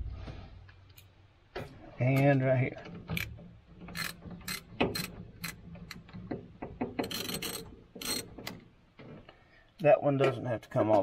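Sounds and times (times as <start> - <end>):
ratchet wrench clicking: 3.9 - 5.6, 7.0 - 8.3.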